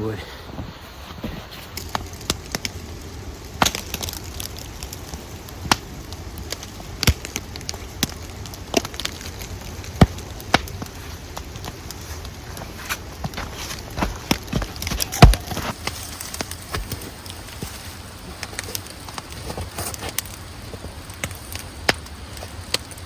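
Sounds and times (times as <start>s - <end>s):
firewood knocking against stump: 13.2s - 17.7s.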